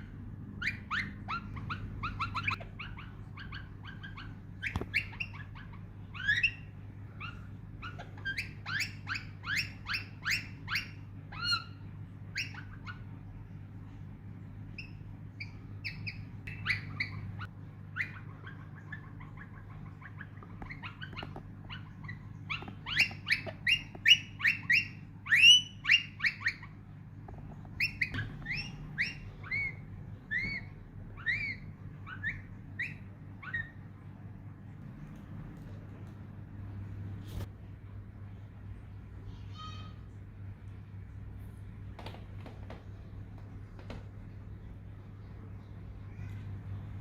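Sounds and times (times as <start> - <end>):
parakeet chirping: 0.0 - 34.6.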